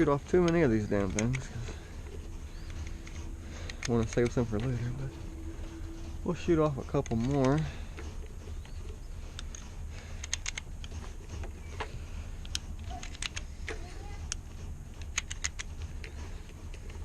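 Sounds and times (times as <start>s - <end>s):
steady low rumble: 0.0s - 17.0s
light clicks and taps: 0.2s - 1.6s.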